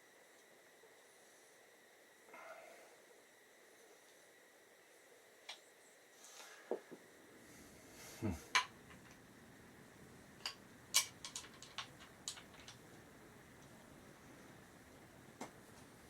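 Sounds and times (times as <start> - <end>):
clicks and knocks of hardware: 10.4 - 12.8.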